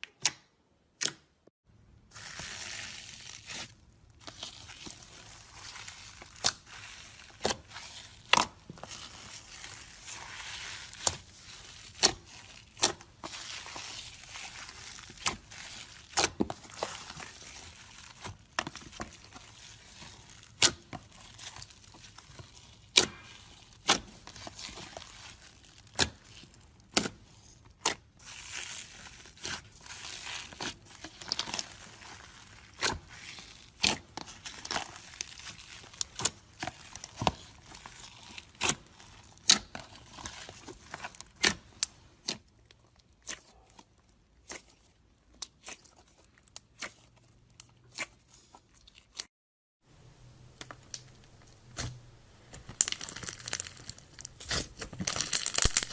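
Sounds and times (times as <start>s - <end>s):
slime crackling and crinkling: 2.0s - 49.3s, 50.4s - 55.9s
slime popping and clicking: 54.5s - 55.9s.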